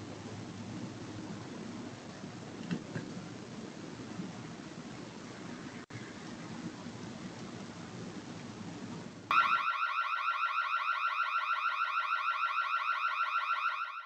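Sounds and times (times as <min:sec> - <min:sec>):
background hiss: 0:00.0 - 0:13.3
rising electronic siren tone: 0:09.3 - 0:14.0.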